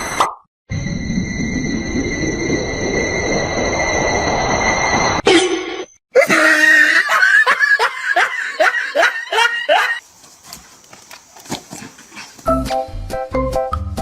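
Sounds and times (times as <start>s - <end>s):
person laughing hard: 6.2s - 10.0s.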